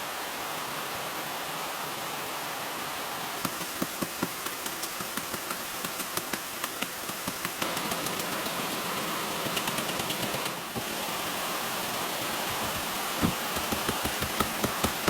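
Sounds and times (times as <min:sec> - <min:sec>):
background hiss: 0:00.0 - 0:15.0
sharp rapid taps: 0:03.4 - 0:08.7, 0:09.4 - 0:10.6, 0:12.2 - 0:15.0.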